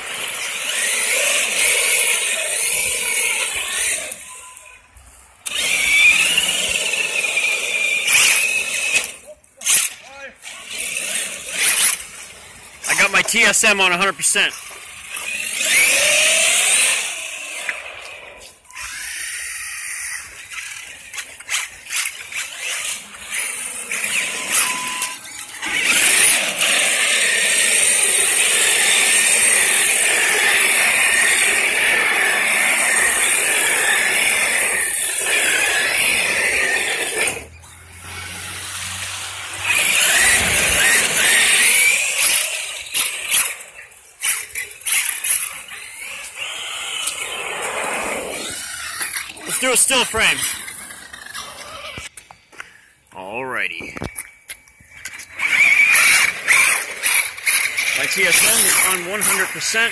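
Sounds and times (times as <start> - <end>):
electric rc car motor whine: 0.0 - 52.2, 53.9 - 59.9.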